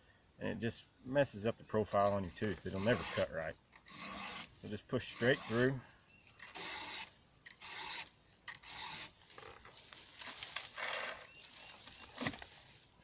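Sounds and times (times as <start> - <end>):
file rasping on chainsaw chain: 2.0 - 5.8, 6.4 - 9.2.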